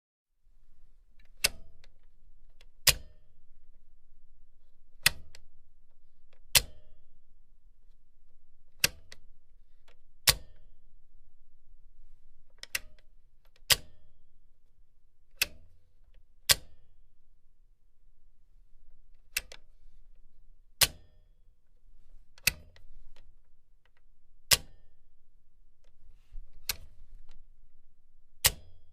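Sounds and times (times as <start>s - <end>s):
faint low hum: 0.4s - 28.9s
machine switch clicking: 1.2s - 1.9s, 2.8s - 3.2s, 6.5s - 6.9s, 10.3s - 10.6s, 13.6s - 14.0s, 20.8s - 21.1s, 24.5s - 24.8s, 26.6s - 27.4s, 28.4s - 28.9s.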